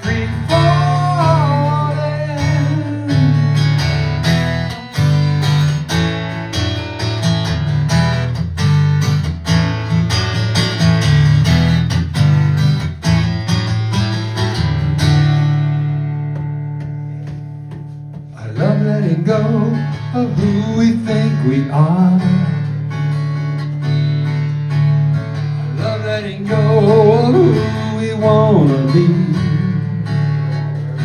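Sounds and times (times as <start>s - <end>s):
man singing: 0.0s - 3.7s, 18.3s - 22.8s, 25.6s - 31.0s
acoustic guitar strumming: 0.0s - 31.0s.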